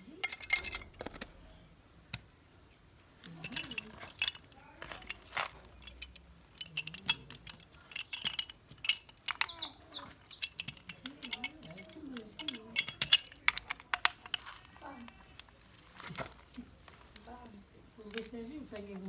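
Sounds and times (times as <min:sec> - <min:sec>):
small hard objects clinking: 0:00.0 - 0:02.2, 0:03.2 - 0:19.0
faint wavering voices: 0:09.2 - 0:13.5.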